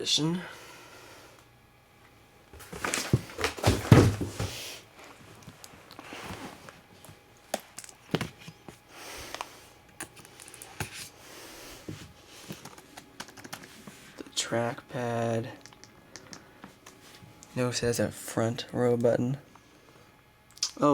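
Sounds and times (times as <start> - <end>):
packaging rustling and sliding: 2.6 - 4.8.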